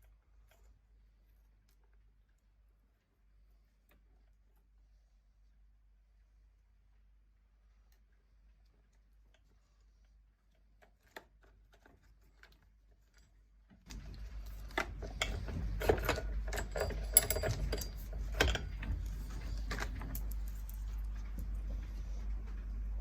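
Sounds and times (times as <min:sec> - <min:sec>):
metallic clinking of chainsaw chain: 0:16.5 - 0:18.2.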